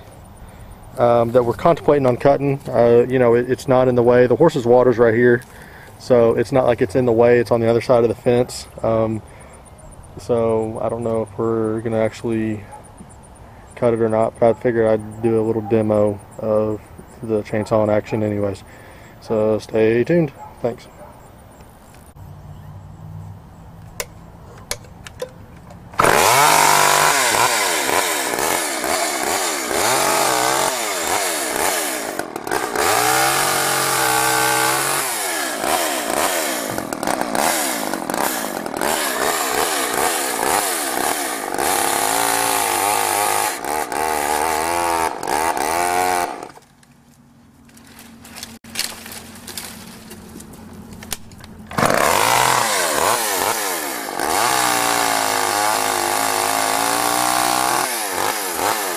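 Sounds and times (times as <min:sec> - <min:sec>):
chainsaw revving: 0:25.9 - 0:46.6, 0:51.6 - 0:58.9.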